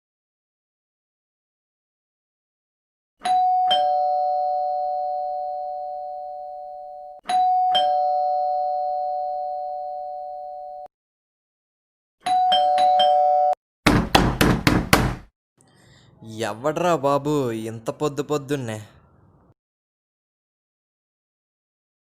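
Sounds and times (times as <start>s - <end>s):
two-note doorbell chime: 3.2s - 10.9s, 12.3s - 13.6s
rapid knocking on door: 13.8s - 15.3s.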